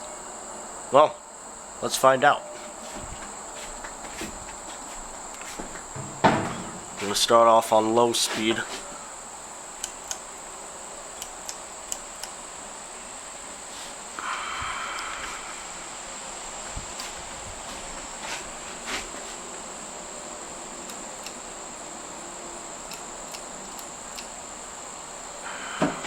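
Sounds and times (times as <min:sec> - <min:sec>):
insects trilling: 0:00.0 - 0:26.0
faint clicks: 0:09.8 - 0:10.3, 0:11.2 - 0:12.4, 0:14.8 - 0:15.4, 0:22.9 - 0:24.3.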